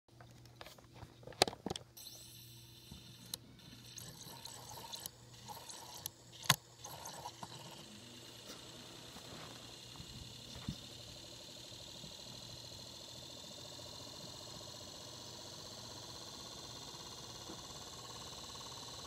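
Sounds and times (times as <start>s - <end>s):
cd player mechanism humming: 1.4s - 19.0s
sharp clicks: 4.0s - 8.6s.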